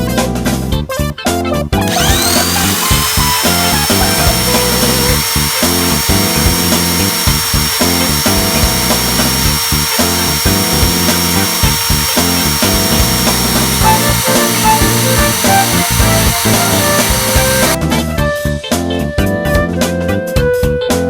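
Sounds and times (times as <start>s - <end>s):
power drill boring a hole: 1.9s - 17.8s.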